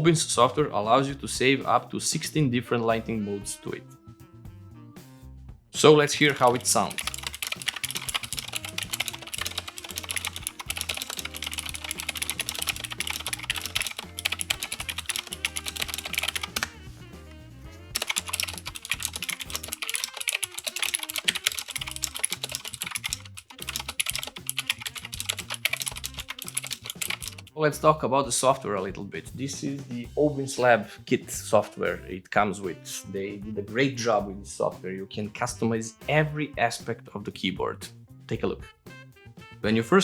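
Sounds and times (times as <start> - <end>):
mechanical keyboard typing: 6.1 - 16.7, 18.0 - 27.5.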